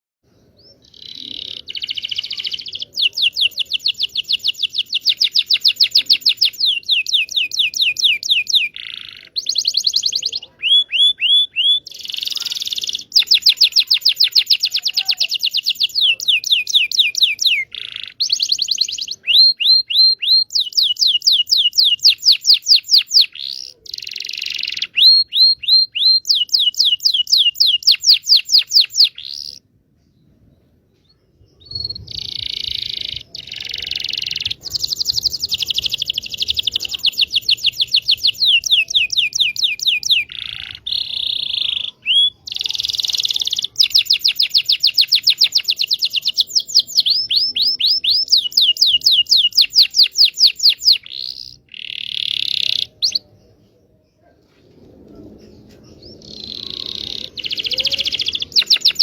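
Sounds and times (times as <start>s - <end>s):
canary singing trills: 0.3s - 29.7s, 31.5s - 53.6s, 55.9s - 59.0s.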